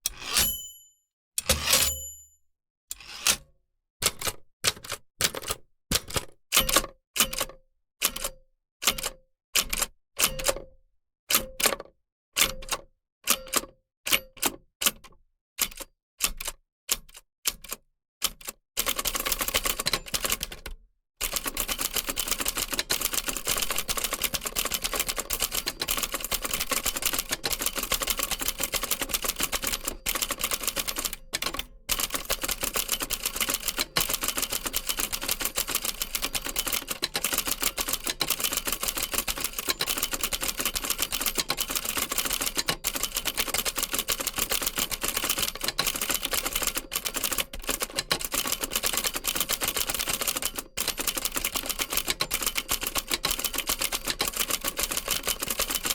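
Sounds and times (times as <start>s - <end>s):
typewriter keys clattering: 18.8s - 55.9s.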